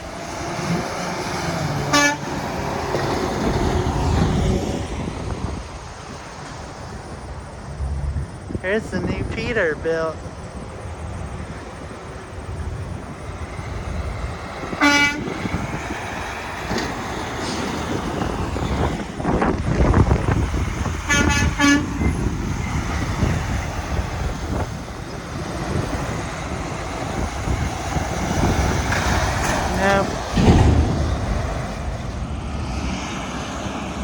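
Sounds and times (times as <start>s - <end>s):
diesel truck engines rumbling: 0.0s - 34.0s
truck horn blasts: 1.8s - 2.7s, 14.7s - 15.7s, 20.9s - 22.4s.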